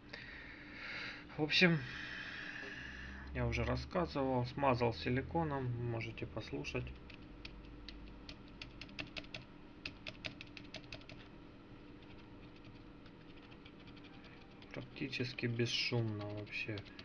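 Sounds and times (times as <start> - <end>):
soft mechanical keyboard typing: 6.8 - 11.3, 12.0 - 17.0.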